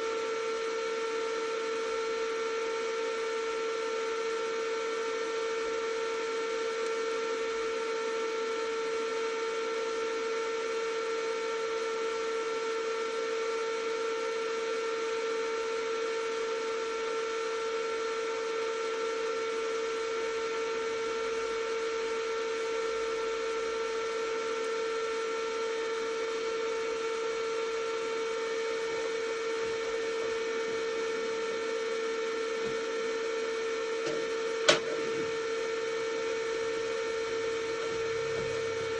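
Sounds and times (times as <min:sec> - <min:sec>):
electric motor whine: 0:20.5 - 0:38.9.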